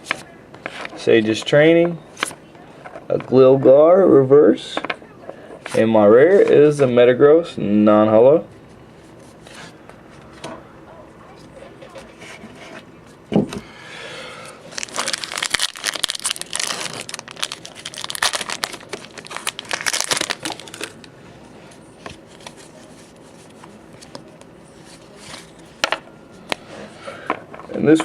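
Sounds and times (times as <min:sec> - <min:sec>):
foil wrapper crinkling and tearing: 0:14.7 - 0:21.1.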